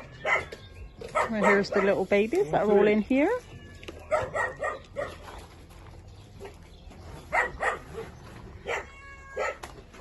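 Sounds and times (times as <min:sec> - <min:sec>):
dogs barking: 0:00.0 - 0:02.1, 0:04.0 - 0:05.6, 0:06.3 - 0:09.8.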